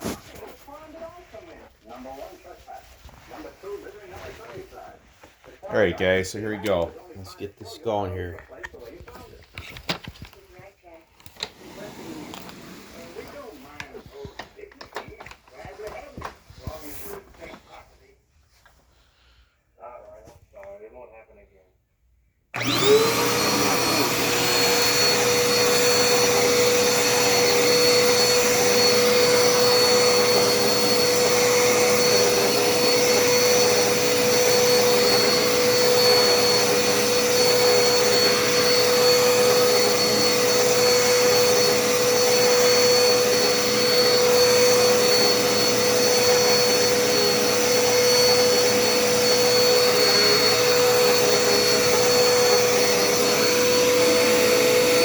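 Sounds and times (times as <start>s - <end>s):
vacuum cleaner running: 11.2s - 17.2s, 22.5s - 55.0s.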